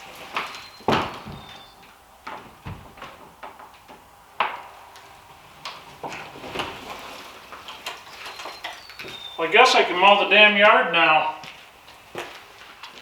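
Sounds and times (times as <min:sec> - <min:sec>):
irregular knocks and clunks: 0:00.0 - 0:04.7.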